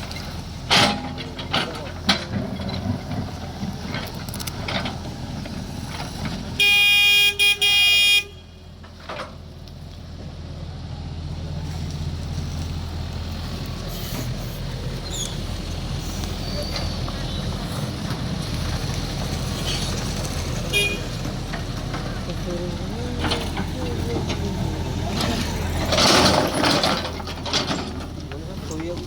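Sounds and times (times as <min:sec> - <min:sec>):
backhoe diesel engine running: 0:00.0 - 0:29.0
vehicle horn honking: 0:06.6 - 0:08.6, 0:20.7 - 0:21.2.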